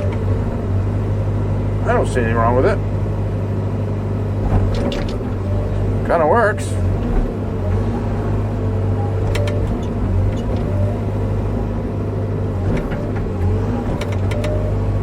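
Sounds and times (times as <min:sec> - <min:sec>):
diesel engine running: 0:00.0 - 0:15.0
sharp clicks and knocks: 0:04.4 - 0:05.4, 0:09.2 - 0:10.8, 0:12.6 - 0:14.6.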